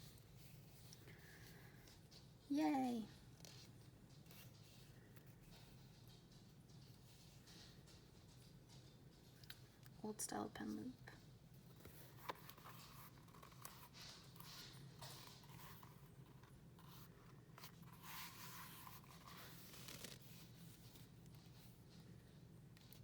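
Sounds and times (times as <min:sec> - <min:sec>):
leather cover rustling and scraping: 0:11.8 - 0:21.7.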